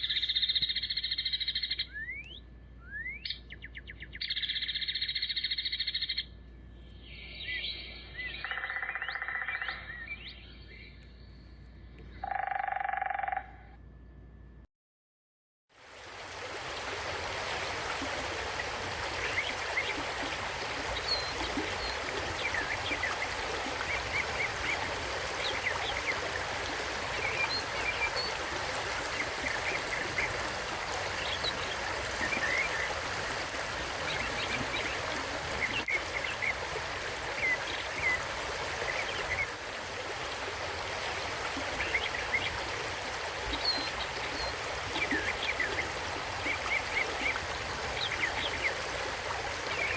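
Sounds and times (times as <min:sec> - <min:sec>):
mountain stream running: 0:15.8 - 0:49.9.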